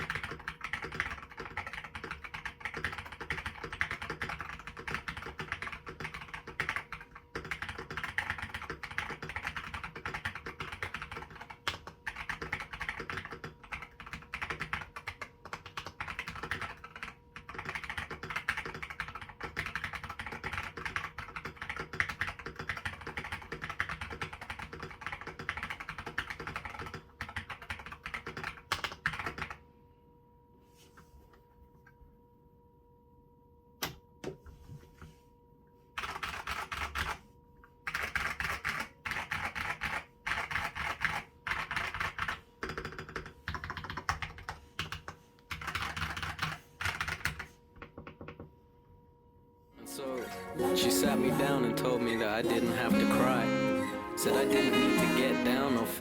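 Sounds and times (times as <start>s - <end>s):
mechanical keyboard typing: 0.0s - 29.6s, 36.0s - 37.2s, 37.8s - 48.4s
faint steady hum: 0.0s - 56.0s.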